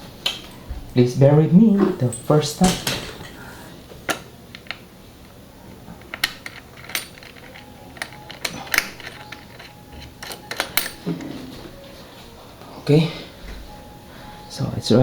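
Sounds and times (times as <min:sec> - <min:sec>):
metallic clicks and clinks: 0:02.0 - 0:03.7, 0:06.0 - 0:11.2.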